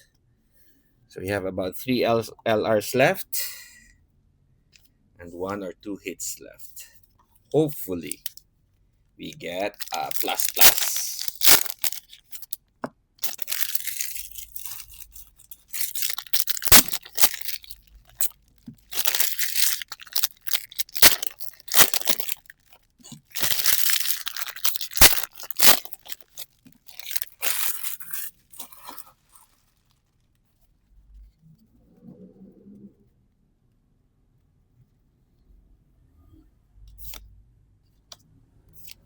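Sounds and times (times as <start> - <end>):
wrapper tearing and crinkling: 8.0 - 8.4, 9.5 - 12.6, 13.2 - 30.3.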